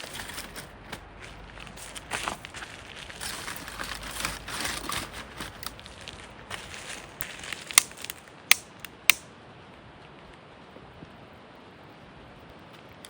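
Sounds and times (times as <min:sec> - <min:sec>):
kindling crunching and rustling: 0:00.0 - 0:09.2
kindling snapping: 0:00.0 - 0:09.3.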